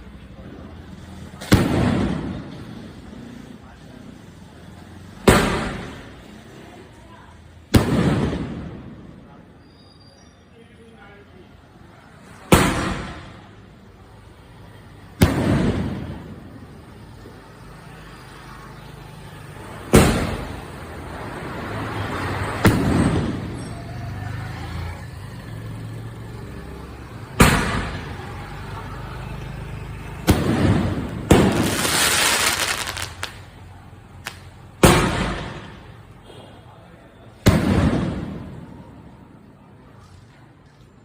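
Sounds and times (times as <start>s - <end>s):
firework bangs with rumbling echo: 1.4s - 2.9s, 5.2s - 6.2s, 7.7s - 9.2s, 12.5s - 13.5s, 15.2s - 16.6s, 19.9s - 20.8s, 22.5s - 23.6s, 27.3s - 28.2s, 30.2s - 33.4s, 34.8s - 35.9s, 37.4s - 38.7s
firework hiss: 30.3s - 33.5s.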